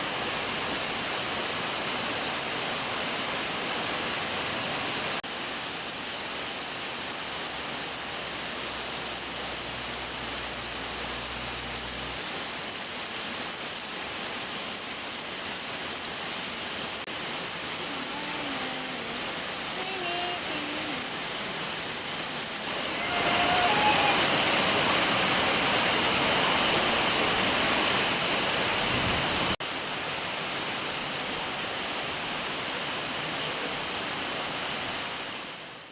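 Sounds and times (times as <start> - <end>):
rain hissing: 0.0 - 35.9.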